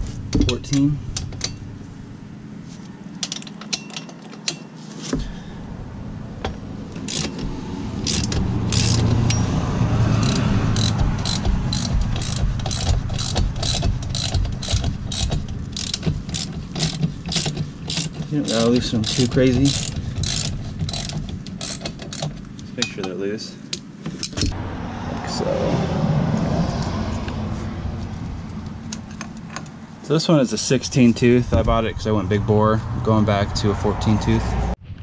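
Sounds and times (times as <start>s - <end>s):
socket ratchet clicking: 7.0s - 7.4s, 8.0s - 9.4s, 10.2s - 22.4s.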